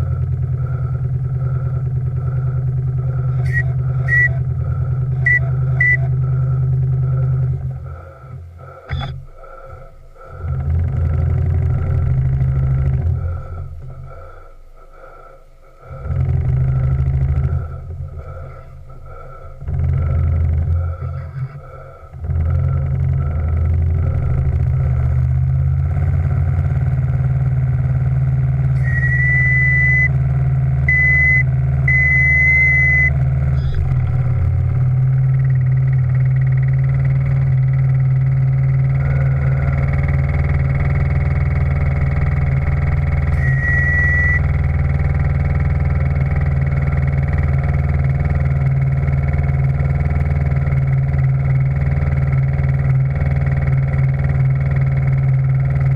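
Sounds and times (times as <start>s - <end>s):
steam machinery humming: 0.0s - 55.9s
steam whistle blasts: 3.4s - 4.5s, 5.2s - 6.1s, 28.8s - 30.2s, 43.3s - 44.6s.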